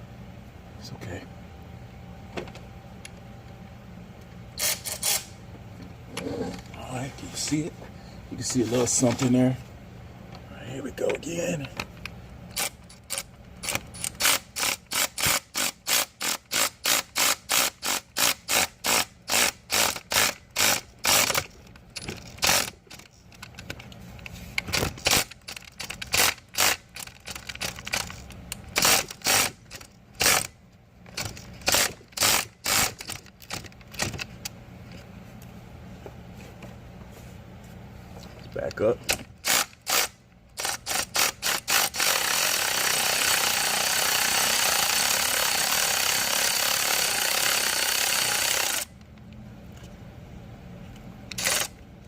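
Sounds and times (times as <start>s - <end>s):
hand ratchet clicking: 12.5s - 23.7s, 24.6s - 30.5s, 31.1s - 34.1s, 39.1s - 49.0s, 51.3s - 51.8s.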